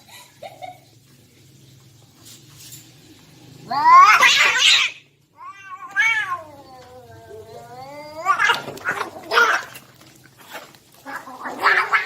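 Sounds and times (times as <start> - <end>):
cat screeching and hissing: 3.6 - 12.0
cat yowling: 3.7 - 9.8, 11.0 - 12.0.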